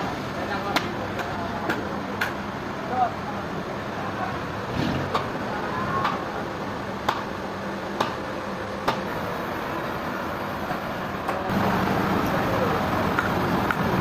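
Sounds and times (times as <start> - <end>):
sawmill machinery humming: 5.3 - 14.0.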